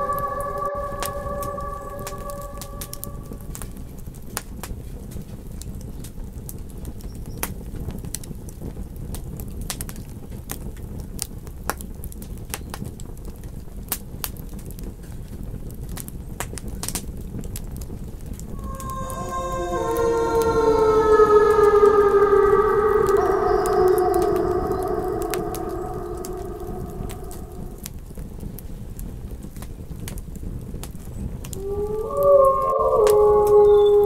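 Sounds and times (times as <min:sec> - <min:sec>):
low rumble of flames: 0:18.3 - 0:28.2.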